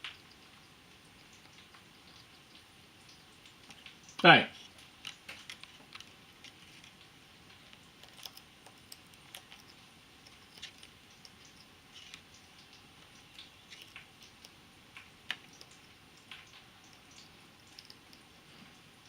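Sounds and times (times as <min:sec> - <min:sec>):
parrot crunching with its beak: 0:03.4 - 0:18.6.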